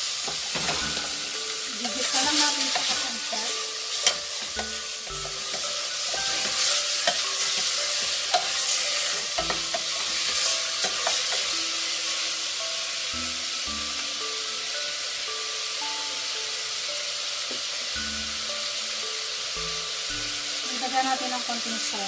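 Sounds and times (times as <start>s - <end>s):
faint background music: 0.0s - 22.0s
meat sizzling in oil: 0.0s - 22.0s
utensil clicking against pot: 2.0s - 8.7s, 9.4s - 11.5s.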